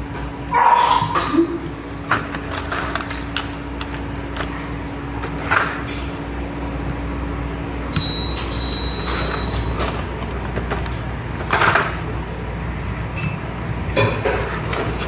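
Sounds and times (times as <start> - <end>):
keycaps clattering: 1.6 - 6.2, 8.0 - 12.1.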